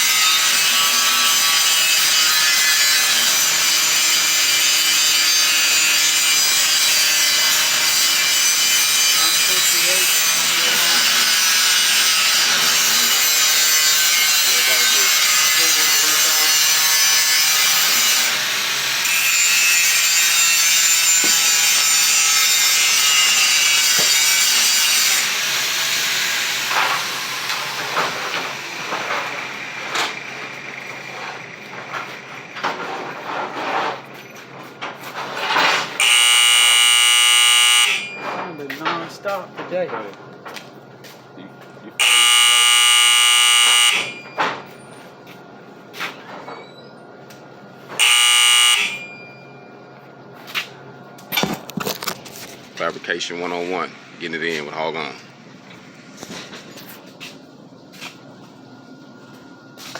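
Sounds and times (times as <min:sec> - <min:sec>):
power tool whining on metal: 0:00.0 - 0:31.6, 0:35.9 - 0:38.2, 0:42.0 - 0:44.3, 0:48.0 - 0:49.5.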